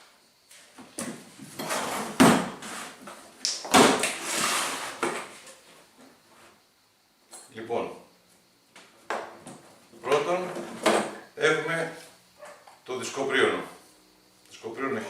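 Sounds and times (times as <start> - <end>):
cardboard rustling and scraping: 1.2 - 3.2, 3.9 - 6.6
knocks and thuds: 2.1 - 2.6.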